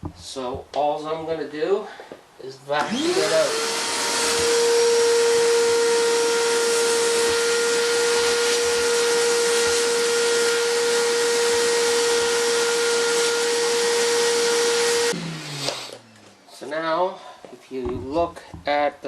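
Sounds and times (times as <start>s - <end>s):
vacuum cleaner running: 2.8s - 16.1s.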